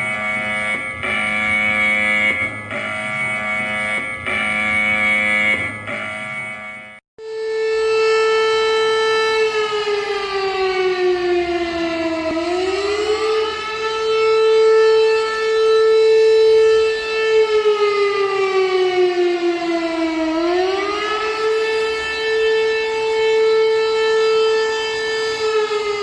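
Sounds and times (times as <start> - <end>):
civil defense siren: 0.0 - 26.0.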